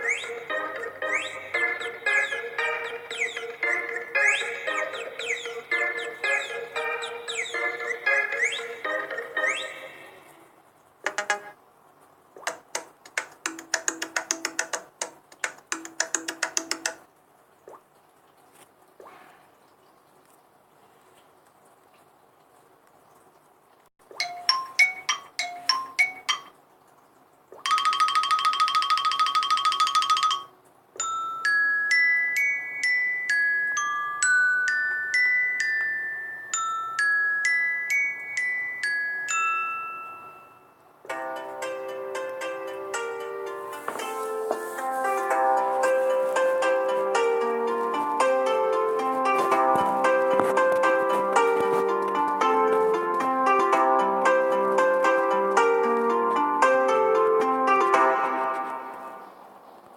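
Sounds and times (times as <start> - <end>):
phone ringtone: 0.0 - 9.9, 24.2 - 26.5, 27.6 - 43.8.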